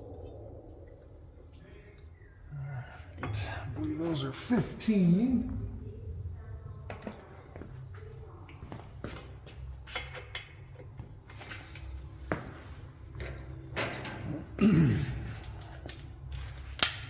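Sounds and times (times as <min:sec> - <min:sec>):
tools and metal parts clinking: 0:08.6 - 0:17.0.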